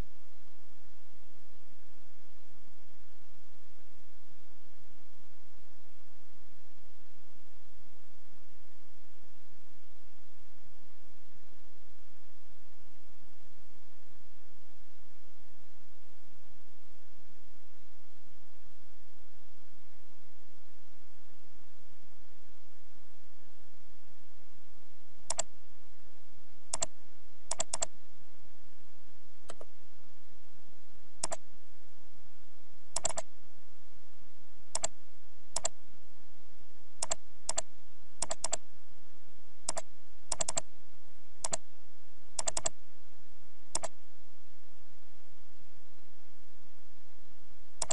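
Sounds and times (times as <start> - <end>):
steady background hiss: 0.0 - 47.9
computer mouse buttons clicking: 25.3 - 25.5, 26.7 - 26.9, 27.5 - 27.9, 29.5 - 29.7, 31.2 - 31.4, 33.0 - 33.3, 34.7 - 35.0, 35.6 - 35.8, 37.0 - 38.6, 39.7 - 40.7, 41.4 - 41.6, 42.4 - 42.8, 43.7 - 44.0.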